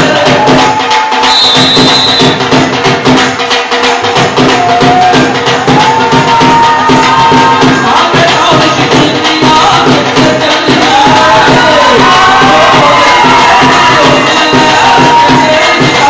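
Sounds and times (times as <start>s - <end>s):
driving drum and percussion beat: 0.0s - 16.0s.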